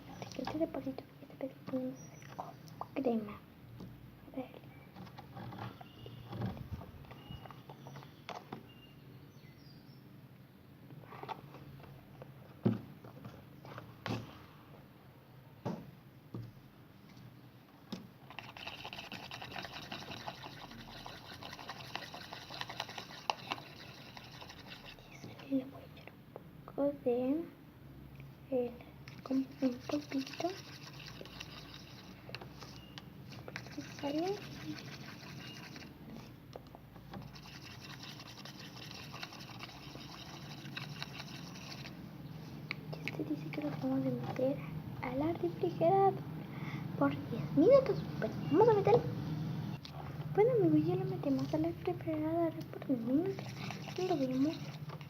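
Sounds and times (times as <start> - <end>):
slime stirred in container: 18.2 - 25.3, 29.1 - 36.4, 37.0 - 42.0, 51.2 - 55.0.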